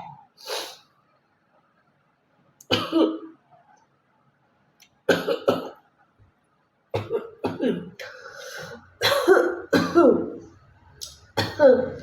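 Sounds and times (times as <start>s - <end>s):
woman coughing: 2.7s - 3.3s, 5.1s - 5.8s, 7.0s - 8.0s, 9.0s - 10.4s, 11.4s - 12.0s.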